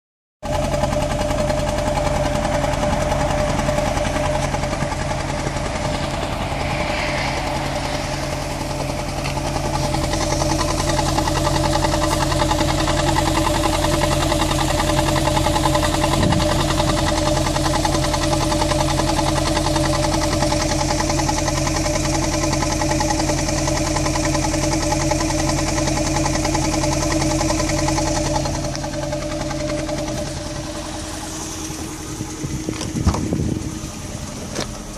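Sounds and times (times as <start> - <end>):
car engine idling roughly: 0.4 - 34.9.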